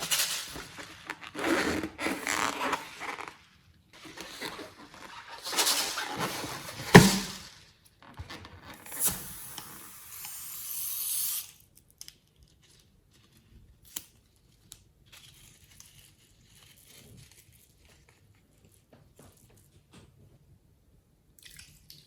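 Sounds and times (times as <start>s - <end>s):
crinkling and tearing: 0.0s - 7.4s, 12.0s - 18.8s.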